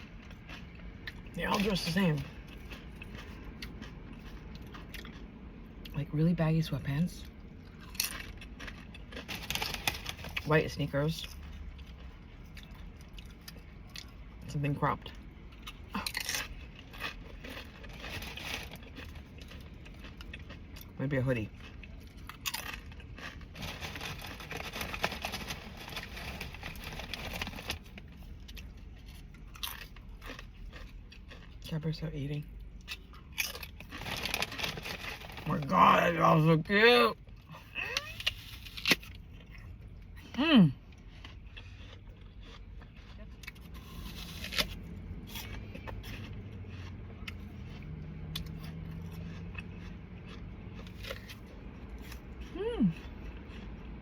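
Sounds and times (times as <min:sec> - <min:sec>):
chewing crunchy food: 0:00.0 - 0:36.5, 0:37.3 - 0:54.0.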